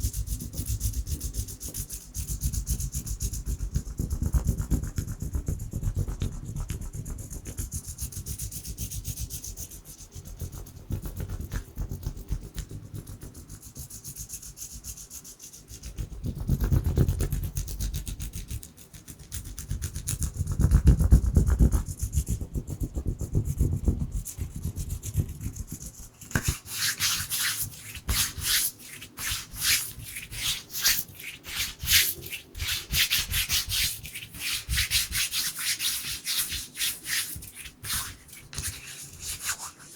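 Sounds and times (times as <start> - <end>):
hands rubbing together: 25.0 - 39.9.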